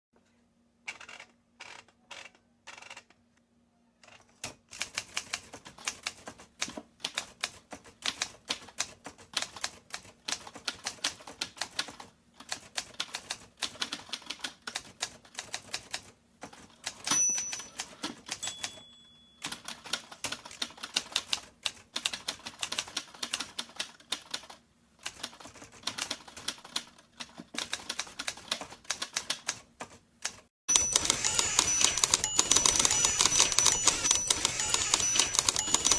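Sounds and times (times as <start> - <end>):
typewriter bell ring: 17.0 - 19.8, 30.7 - 35.9
typewriter keystroke clacks: 19.4 - 35.9.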